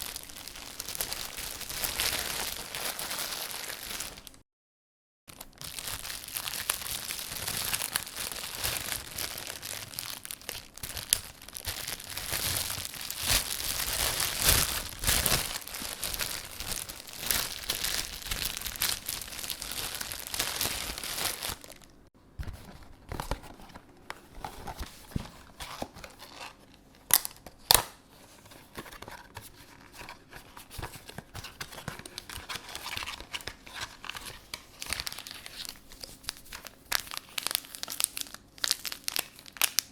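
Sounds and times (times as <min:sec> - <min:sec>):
plastic bag crinkling: 0:00.0 - 0:04.4, 0:05.3 - 0:22.0, 0:32.0 - 0:39.9
cardboard box rustling: 0:22.4 - 0:26.5.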